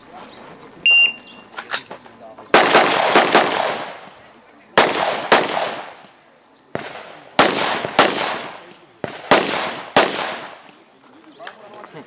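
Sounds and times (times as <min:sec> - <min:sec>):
rifle shots echoing: 0:02.5 - 0:04.2, 0:04.8 - 0:06.2, 0:06.8 - 0:10.8.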